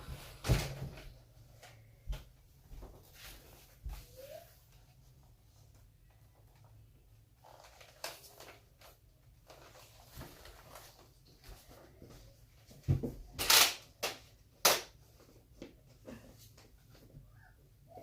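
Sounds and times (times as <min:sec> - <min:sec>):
plastic rustling and knocks: 0:00.0 - 0:03.1, 0:09.6 - 0:13.5
sharp plastic clacks: 0:13.4 - 0:15.0.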